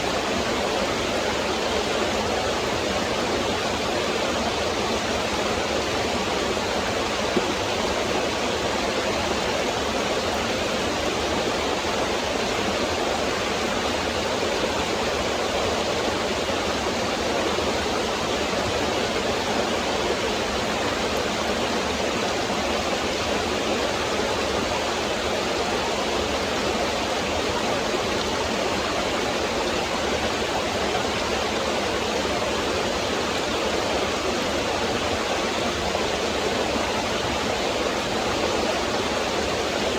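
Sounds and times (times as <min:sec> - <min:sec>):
stream rushing over rocks: 0:00.0 - 0:39.9.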